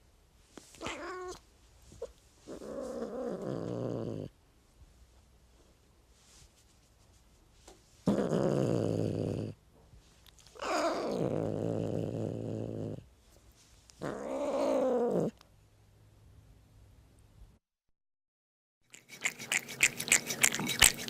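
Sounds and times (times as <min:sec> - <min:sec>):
cat meowing: 0:00.8 - 0:01.4.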